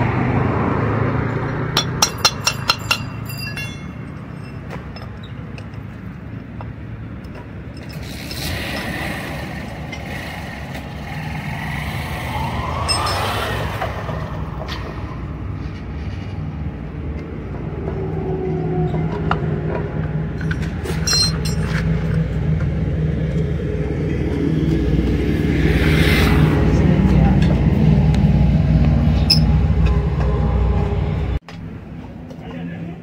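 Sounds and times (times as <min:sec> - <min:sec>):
vehicle engines rumbling: 0:00.0 - 0:33.0
rising whine: 0:08.6 - 0:31.4.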